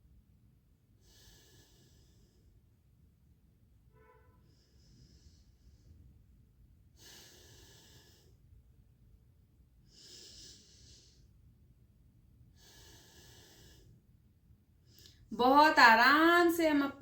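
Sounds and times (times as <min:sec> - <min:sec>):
deep breaths through nose: 0:01.0 - 0:02.5, 0:07.0 - 0:08.4, 0:09.9 - 0:11.4, 0:12.6 - 0:14.0.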